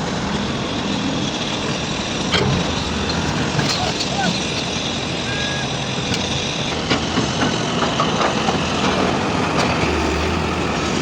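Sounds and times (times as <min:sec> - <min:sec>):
diesel machinery running: 0:00.0 - 0:11.0
sharp knocks and clanks: 0:01.7 - 0:04.8.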